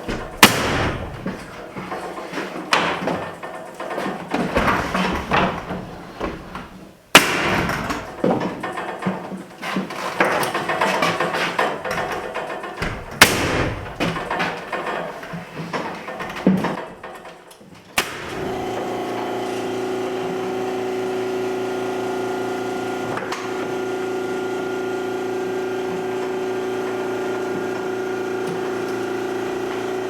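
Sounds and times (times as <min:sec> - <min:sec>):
sharp bangs: 0:00.0 - 0:01.7, 0:07.1 - 0:08.2, 0:12.8 - 0:14.4
knocks taps and clatter: 0:00.0 - 0:18.0.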